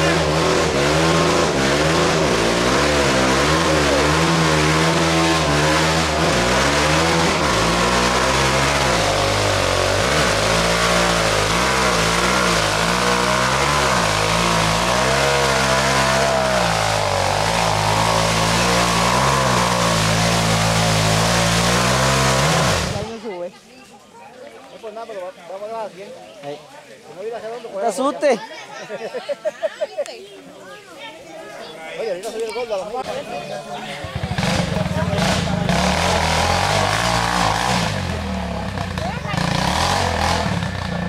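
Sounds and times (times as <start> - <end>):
rush of noise: 0.0 - 23.1
atv engine revving: 0.0 - 23.3, 32.9 - 41.0.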